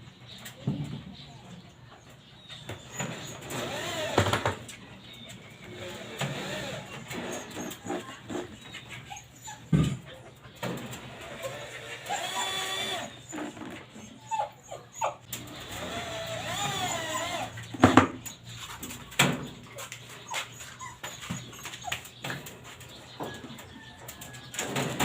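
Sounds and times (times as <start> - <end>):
dog whining and whimpering: 2.6 - 4.2, 5.7 - 17.7, 20.2 - 22.4.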